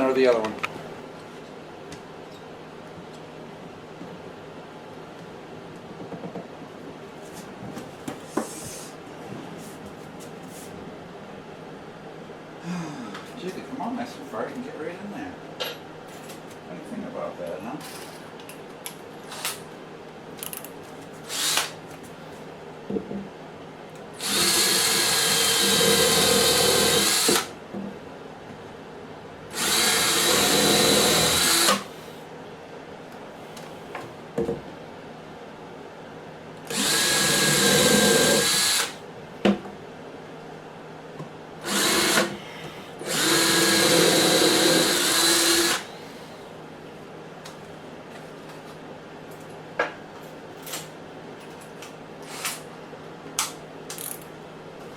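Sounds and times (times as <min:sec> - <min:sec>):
drill-driver motor running: 0:21.3 - 0:21.7, 0:24.2 - 0:27.5, 0:29.5 - 0:31.9, 0:36.7 - 0:39.0, 0:41.6 - 0:42.3, 0:43.0 - 0:45.9.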